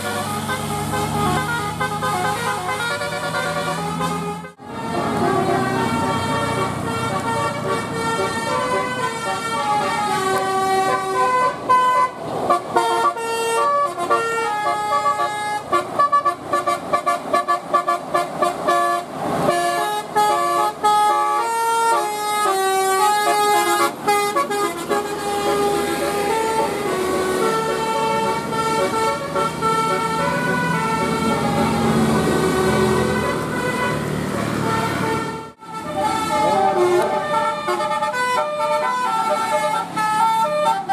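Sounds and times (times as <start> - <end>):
multi-tone air horn melody: 0.0 - 40.9.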